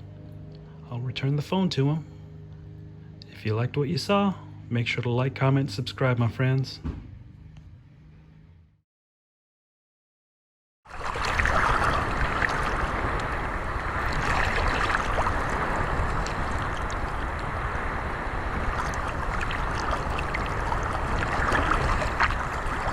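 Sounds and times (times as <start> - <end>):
surf: 10.9 - 22.9
wind on microphone: 11.0 - 22.9.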